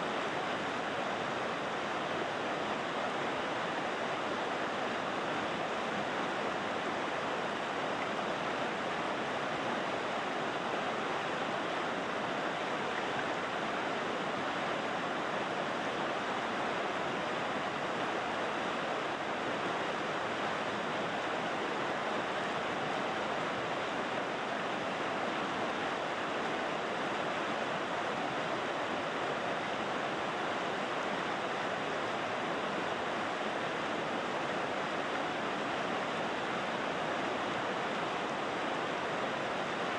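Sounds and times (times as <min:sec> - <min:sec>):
river rushing over rocks: 0:00.0 - 0:39.9.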